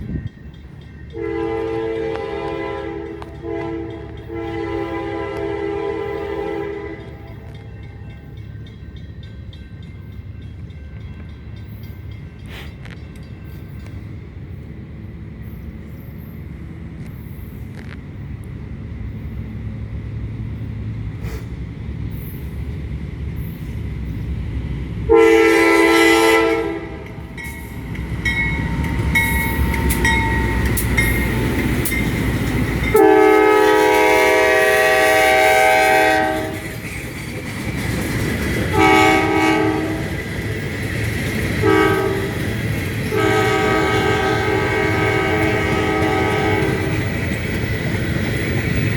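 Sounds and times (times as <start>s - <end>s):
diesel locomotive rumble: 0.0s - 48.9s
train air horn blasts: 1.1s - 7.6s, 25.1s - 27.2s, 32.9s - 36.7s, 38.7s - 40.2s, 41.6s - 47.0s.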